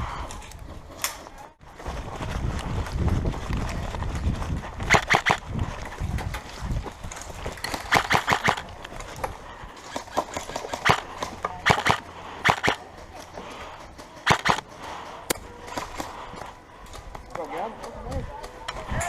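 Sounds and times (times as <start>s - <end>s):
airsoft guns firing: 4.9s - 5.4s, 7.7s - 8.7s, 9.8s - 12.8s, 14.2s - 14.8s.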